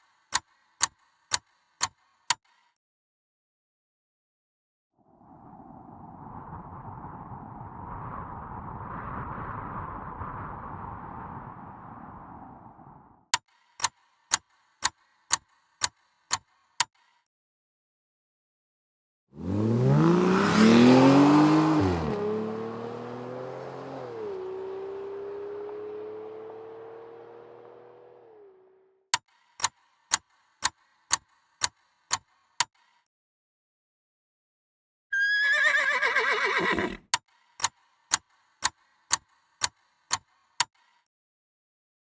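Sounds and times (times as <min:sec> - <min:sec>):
clock-like ticking: 0:13.8 - 0:17.0, 0:29.6 - 0:32.3
vehicle engine accelerating: 0:19.4 - 0:28.8
horse whinnying: 0:35.2 - 0:37.1.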